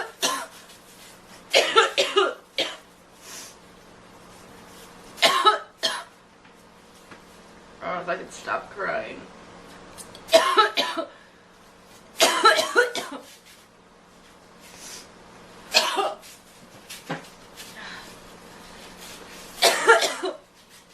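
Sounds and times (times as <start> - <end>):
girl coughing: 0.0 - 0.6, 1.5 - 2.9, 5.2 - 6.2, 10.3 - 11.2, 12.2 - 13.3, 15.7 - 16.2, 19.6 - 20.4
faint breaths: 17.6 - 18.9.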